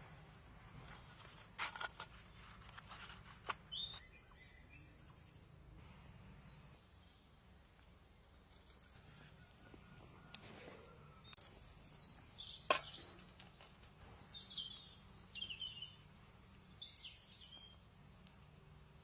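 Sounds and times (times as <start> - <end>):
birds chirping: 3.3 - 7.4, 10.9 - 16.1, 16.7 - 19.0.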